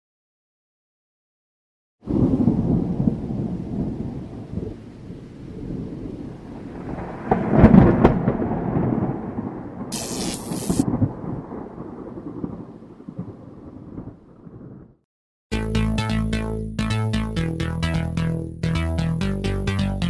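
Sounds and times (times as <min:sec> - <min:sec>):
thunder rumbling: 0:02.1 - 0:15.0
short high hiss: 0:09.9 - 0:10.8.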